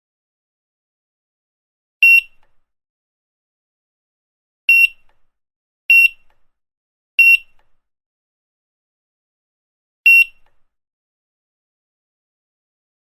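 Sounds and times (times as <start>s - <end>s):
barcode scanner beeps: 2.0s - 2.4s, 4.7s - 5.1s, 5.9s - 6.3s, 7.2s - 7.6s, 10.1s - 10.5s.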